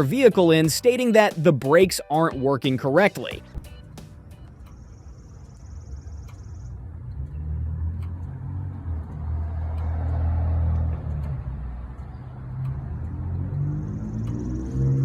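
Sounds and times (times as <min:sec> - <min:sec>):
car engine rumbling: 0:03.4 - 0:15.0.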